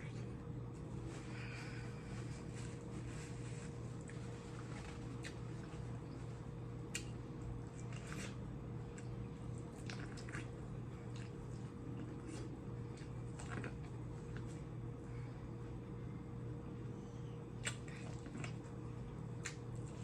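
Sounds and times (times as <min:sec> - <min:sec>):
steady low hum: 0:00.0 - 0:20.0
wet chewing mouth sounds: 0:06.8 - 0:14.6, 0:17.6 - 0:18.7, 0:19.4 - 0:20.0.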